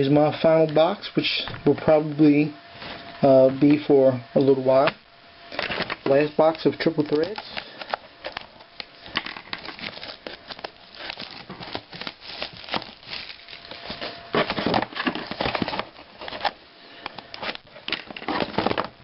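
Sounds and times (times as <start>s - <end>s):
plastic wrapping crinkling and tearing: 5.6s - 16.6s
handling clicks and rustles: 5.6s - 19.0s.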